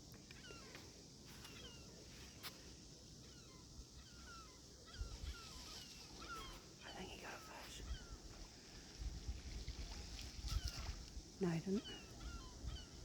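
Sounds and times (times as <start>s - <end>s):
birds chirping: 0.3s - 8.3s, 11.4s - 13.0s
hiss of surf or wind: 5.1s - 13.0s.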